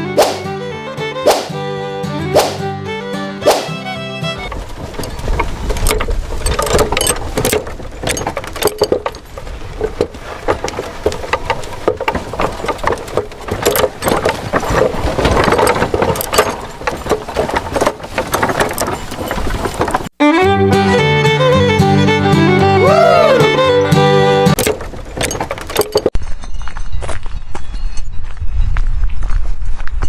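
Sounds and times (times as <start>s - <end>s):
plastic and metal parts rattling: 4.4s - 20.2s, 24.5s - 26.2s.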